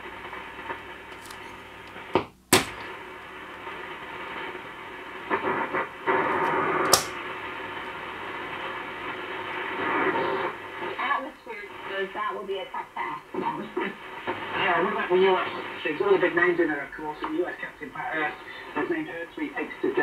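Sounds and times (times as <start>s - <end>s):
radio static and hiss: 0.0s - 20.0s
sharp clicks: 6.9s - 7.2s.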